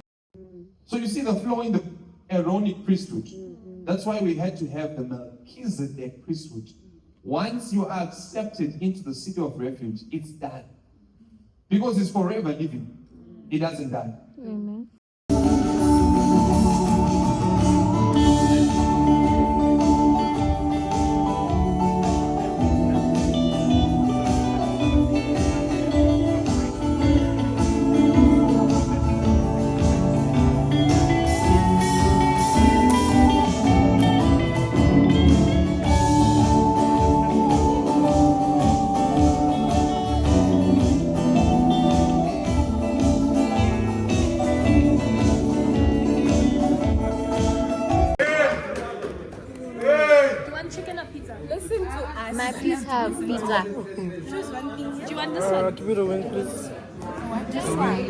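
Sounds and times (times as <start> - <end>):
guitar and organ music with beat: 15.3 - 48.2.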